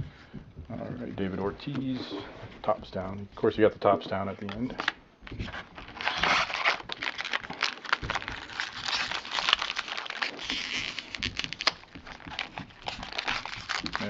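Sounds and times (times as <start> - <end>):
wrapper crinkling and tearing: 4.7 - 14.0.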